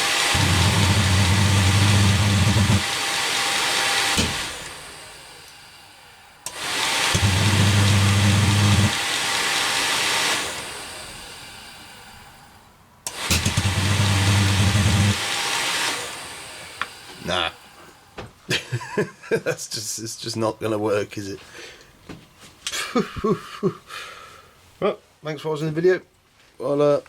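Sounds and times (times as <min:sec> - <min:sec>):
heater fan motor humming: 0:00.0 - 0:18.2.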